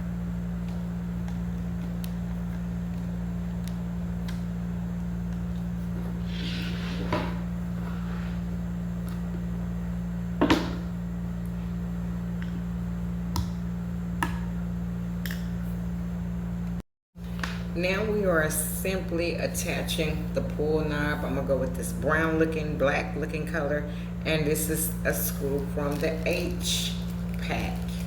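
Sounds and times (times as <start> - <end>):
steady low hum: 0.0 - 28.0
knocks of cabinet parts: 10.4 - 10.9.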